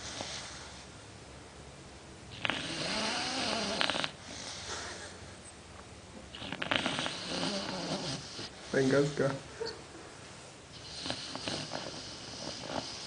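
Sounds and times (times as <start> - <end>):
pet snoring: 0.0 - 0.7, 2.3 - 4.8, 6.3 - 8.8, 10.7 - 13.0
pet breathing: 6.3 - 9.0, 10.7 - 13.0.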